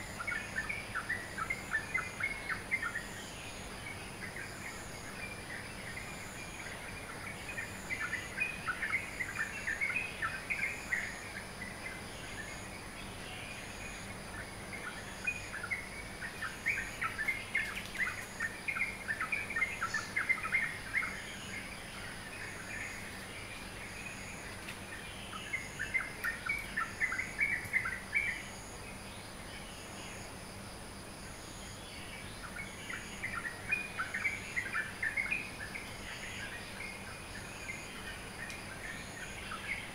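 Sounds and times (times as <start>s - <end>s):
birds chirping: 0.0s - 30.2s
high-pitched background hiss: 0.0s - 39.9s.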